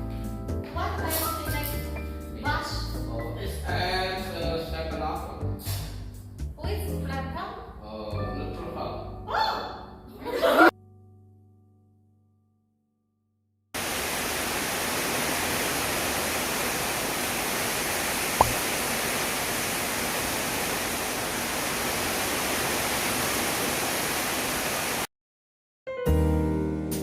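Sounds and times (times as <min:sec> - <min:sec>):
heavy rain hissing: 0:13.8 - 0:25.1.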